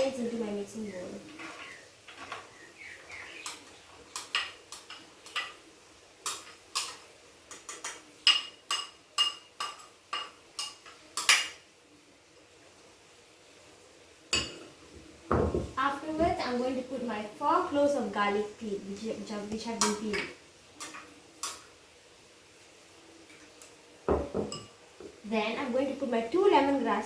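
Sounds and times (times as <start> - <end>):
metal utensil clinking on a bowl: 24.4 - 24.8.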